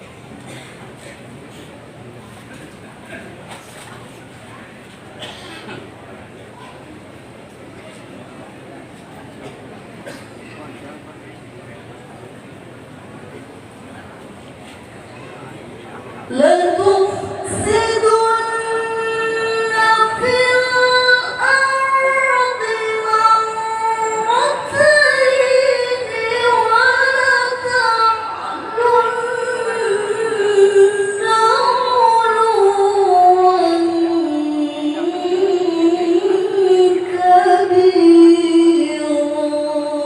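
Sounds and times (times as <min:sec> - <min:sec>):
person chanting recitation: 0:16.3 - 0:40.0.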